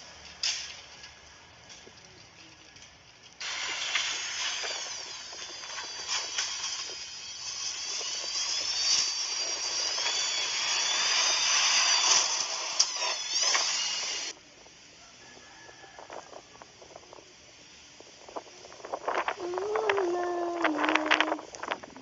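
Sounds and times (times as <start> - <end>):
rushing hiss: 3.4 - 14.4
high-pitched mechanical whine: 3.4 - 14.8, 15.7 - 22.0.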